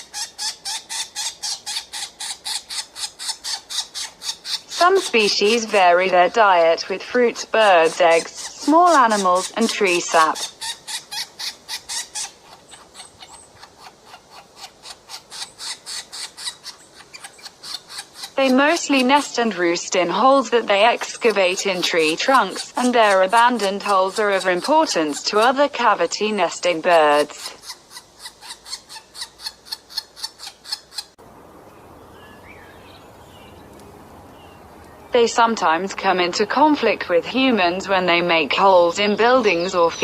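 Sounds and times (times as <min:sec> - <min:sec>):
outdoor background hiss: 0:00.0 - 0:40.0
woodpecker tapping wood: 0:00.2 - 0:06.8, 0:07.4 - 0:31.1.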